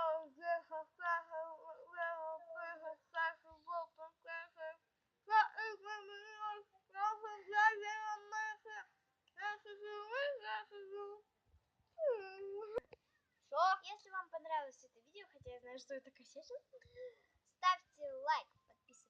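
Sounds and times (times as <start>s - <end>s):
girl singing unaccompanied: 0.0s - 11.2s, 12.0s - 12.9s, 13.5s - 17.0s.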